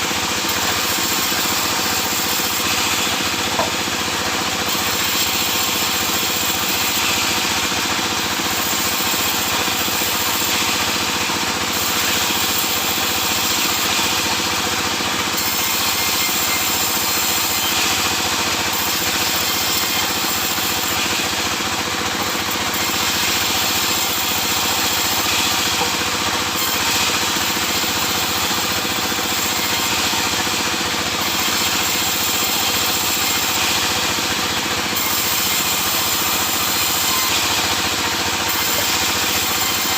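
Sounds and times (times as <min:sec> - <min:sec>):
sawmill saw running: 0:00.0 - 0:39.9.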